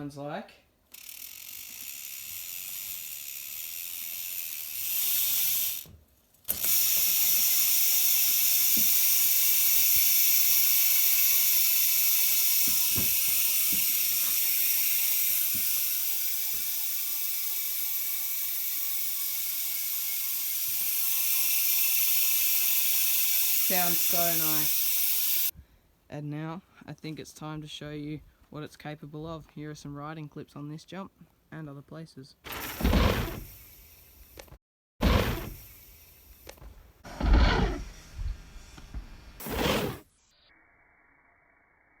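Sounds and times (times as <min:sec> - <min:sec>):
bike hub ratcheting buzz: 0:00.9 - 0:25.5, 0:32.5 - 0:40.1.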